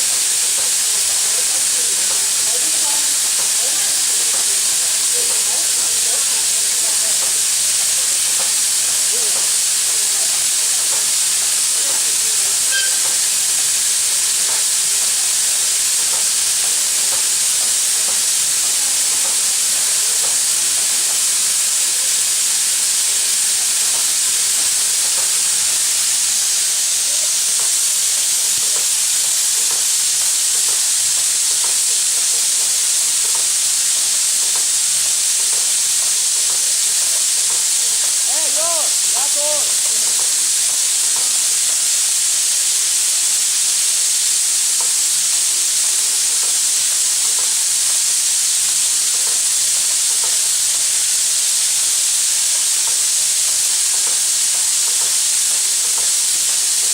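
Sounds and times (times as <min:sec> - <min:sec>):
steam locomotive venting steam: 0:00.0 - 0:56.9.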